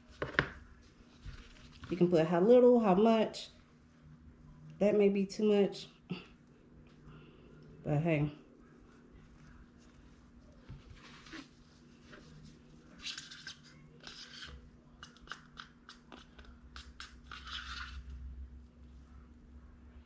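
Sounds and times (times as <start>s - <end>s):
knife scraping crusty bread: 13.1s - 18.1s.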